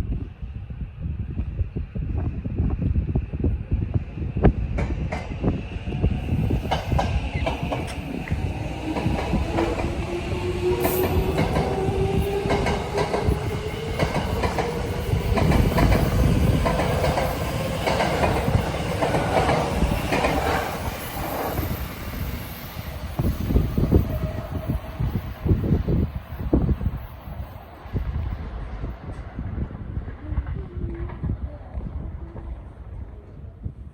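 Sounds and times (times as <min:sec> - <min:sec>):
wheels clacking over rail joints: 0:10.6 - 0:21.6.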